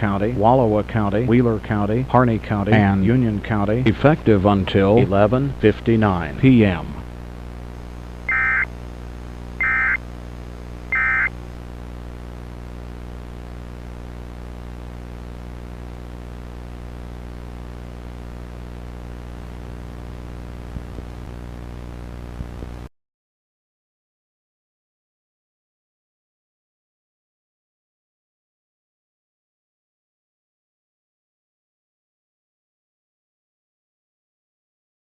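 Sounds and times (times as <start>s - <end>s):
steady low hum: 0.0s - 22.9s
buzzy digital data tones: 8.3s - 8.7s, 9.6s - 10.0s, 10.9s - 11.4s.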